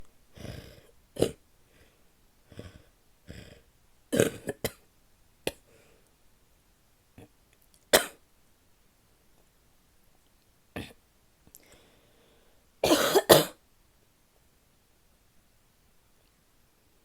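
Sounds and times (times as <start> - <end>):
woman coughing: 12.8 - 13.6.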